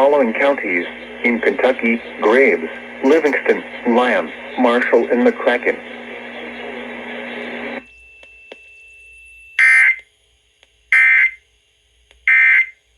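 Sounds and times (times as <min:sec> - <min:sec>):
radio background hiss: 0:00.0 - 0:07.8.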